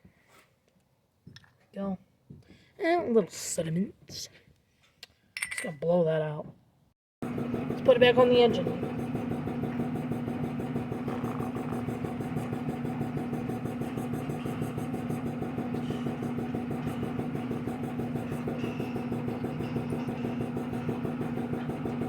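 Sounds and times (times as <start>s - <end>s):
motor humming: 7.2s - 22.0s.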